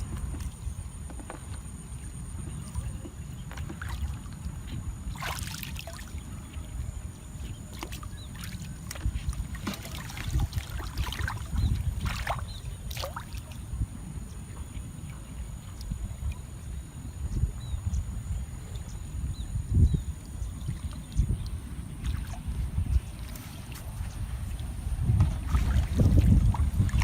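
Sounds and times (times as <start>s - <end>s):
water sloshing and splashing: 0.0s - 17.4s, 20.0s - 27.0s
steady low rumble: 10.4s - 27.0s.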